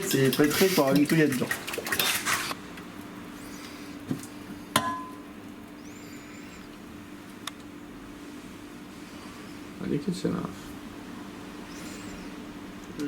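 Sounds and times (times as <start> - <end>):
utensil clinking against bowl: 0.0 - 2.4
steady low hum: 2.5 - 13.0.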